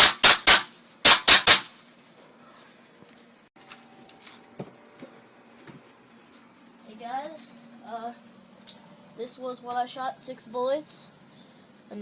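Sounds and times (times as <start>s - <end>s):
airsoft pistol shots: 0.0s - 1.8s.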